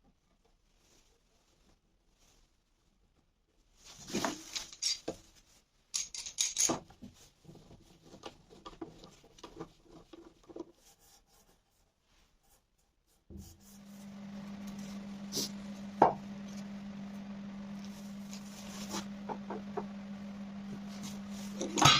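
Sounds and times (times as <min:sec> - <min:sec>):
wooden pieces knocking and clicking: 0:05.9 - 0:06.8
steady low hum: 0:13.3 - 0:21.9.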